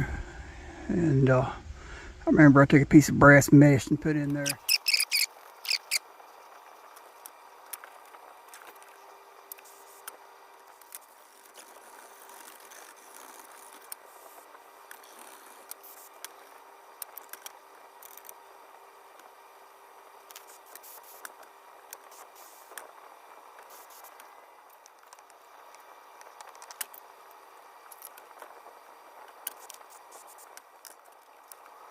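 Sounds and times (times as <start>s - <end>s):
faint steady hiss: 0.0s - 31.9s
small metal parts clicking: 4.4s - 6.0s.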